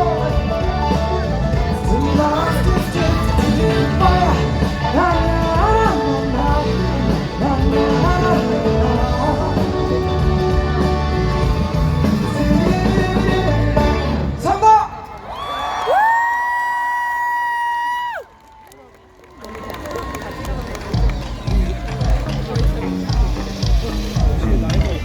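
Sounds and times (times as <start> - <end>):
live band playing: 0.0 - 14.8, 20.7 - 25.0
man singing: 0.0 - 14.8.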